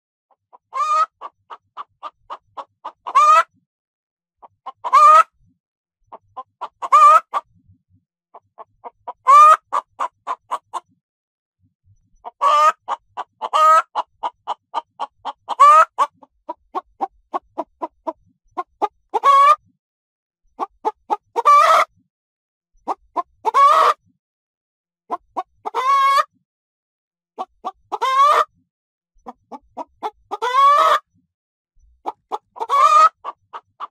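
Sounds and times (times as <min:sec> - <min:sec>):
hen cackling: 0:00.7 - 0:01.4, 0:02.6 - 0:03.5, 0:04.6 - 0:05.3, 0:06.4 - 0:07.4, 0:09.1 - 0:10.8, 0:12.2 - 0:16.8, 0:19.2 - 0:19.6, 0:20.6 - 0:21.9, 0:22.9 - 0:24.0, 0:25.6 - 0:26.3, 0:27.6 - 0:28.5, 0:29.8 - 0:31.0, 0:32.1 - 0:33.9.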